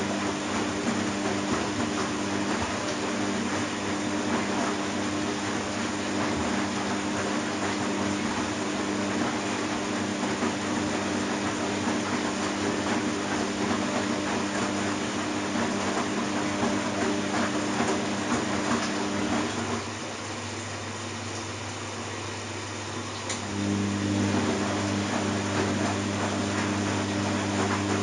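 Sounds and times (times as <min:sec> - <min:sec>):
washing machine running: 0:00.0 - 0:28.0.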